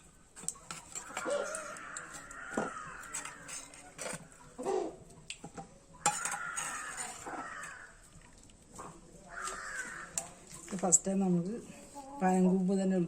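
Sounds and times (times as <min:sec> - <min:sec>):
metal pots and utensils clinking: 0:00.0 - 0:04.6, 0:05.4 - 0:08.3
bird calls: 0:00.5 - 0:08.0.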